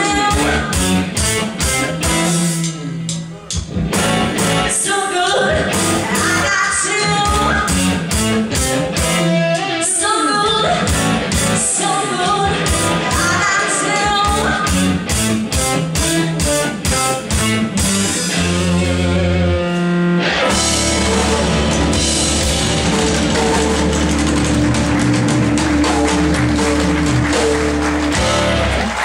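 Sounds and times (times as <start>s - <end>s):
person singing: 0.0s - 1.0s, 4.7s - 7.8s, 11.6s - 14.8s, 20.5s - 22.1s
electric guitar: 0.0s - 29.0s
drum beat: 20.7s - 29.0s.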